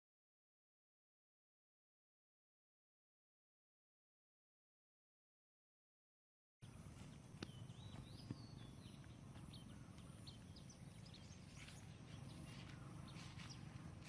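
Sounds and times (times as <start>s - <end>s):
faint bird chirps: 6.6s - 14.0s
low steady hum: 6.6s - 14.0s.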